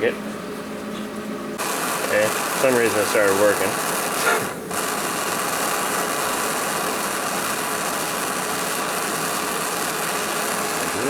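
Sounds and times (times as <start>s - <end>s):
gas torch flame hissing: 1.6s - 11.0s.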